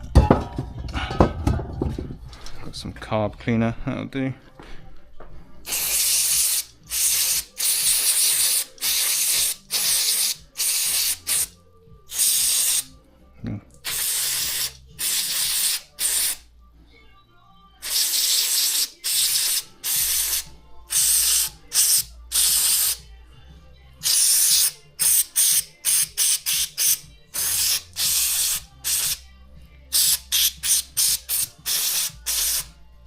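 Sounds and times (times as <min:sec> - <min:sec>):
aerosol can spraying: 0:05.7 - 0:12.9, 0:13.8 - 0:16.4, 0:17.8 - 0:23.0, 0:24.0 - 0:29.2, 0:29.9 - 0:32.7.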